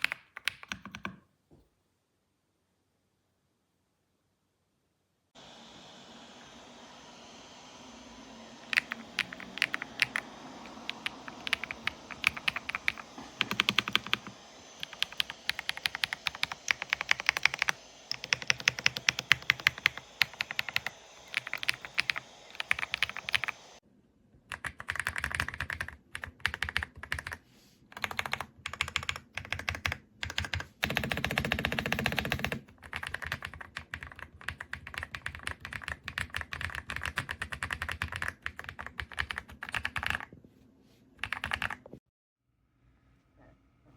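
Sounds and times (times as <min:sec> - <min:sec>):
mechanical keyboard typing: 0:00.0 - 0:01.2, 0:08.7 - 0:23.6, 0:24.5 - 0:40.3, 0:41.2 - 0:41.9.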